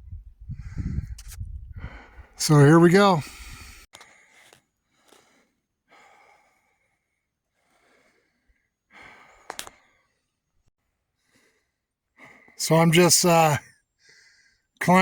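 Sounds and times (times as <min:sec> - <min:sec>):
man breathing hard: 0:03.2 - 0:03.9, 0:05.9 - 0:06.9, 0:07.6 - 0:09.5.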